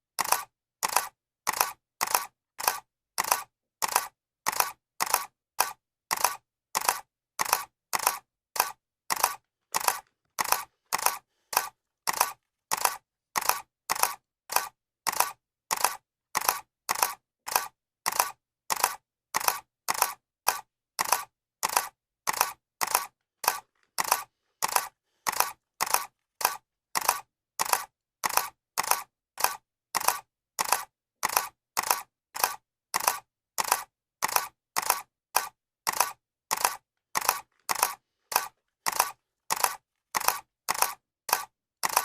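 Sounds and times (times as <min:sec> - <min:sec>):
camera shutter clicking: 0:00.2 - 0:42.0.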